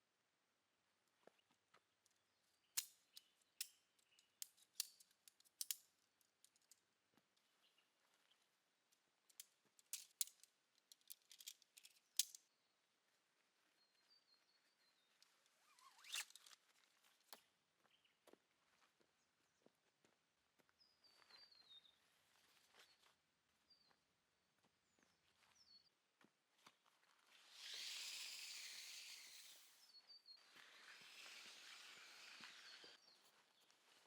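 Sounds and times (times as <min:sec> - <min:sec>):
camping gear clicks and knocks: 0:09.3 - 0:12.4.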